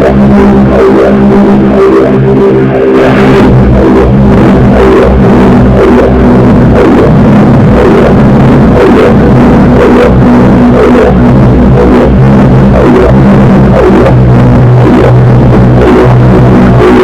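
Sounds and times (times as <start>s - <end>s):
harsh noise: 0.0s - 17.0s
low droning chord: 0.0s - 17.0s.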